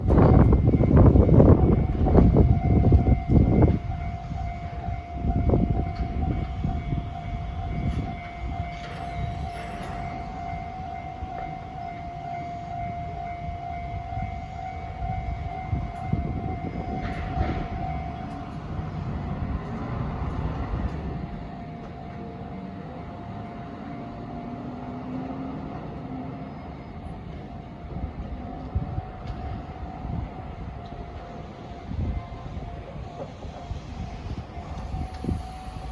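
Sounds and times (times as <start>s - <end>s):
level crossing alarm ringing: 0.0s - 35.9s
train rumbling over rails: 0.0s - 35.9s.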